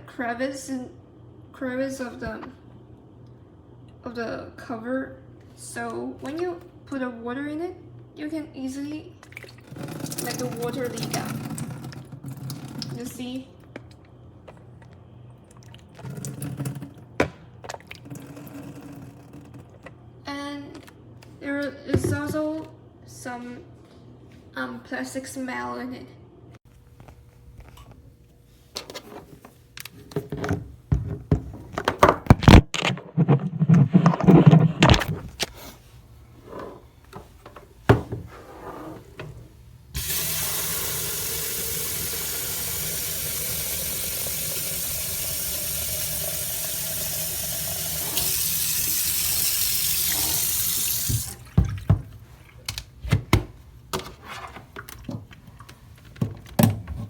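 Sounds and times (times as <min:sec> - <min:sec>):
tap water filling kettle: 0:09.2 - 0:13.1, 0:40.0 - 0:52.2.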